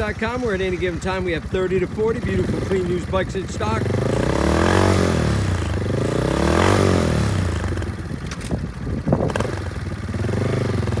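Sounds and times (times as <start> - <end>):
motorcycle engine revving: 0.0 - 11.0.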